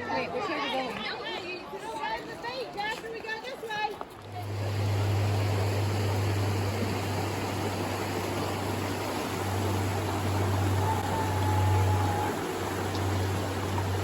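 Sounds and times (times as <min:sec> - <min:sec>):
waterfall rushing: 0:04.3 - 0:14.0.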